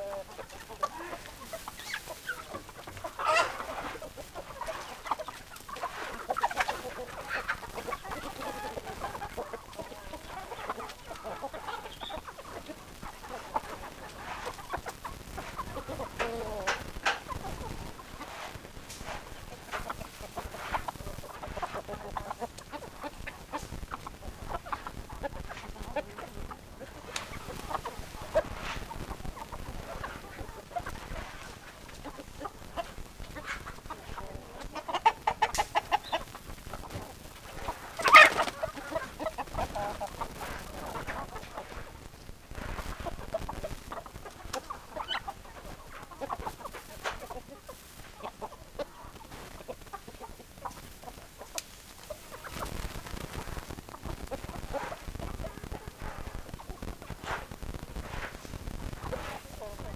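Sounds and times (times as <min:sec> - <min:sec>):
chickens clucking: 0:00.0 - 0:59.9.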